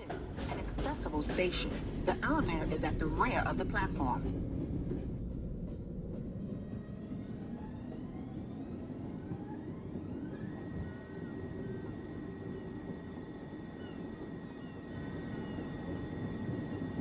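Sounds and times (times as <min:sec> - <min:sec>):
subway car motor whine: 0:00.0 - 0:17.0
low rumble: 0:00.3 - 0:08.5.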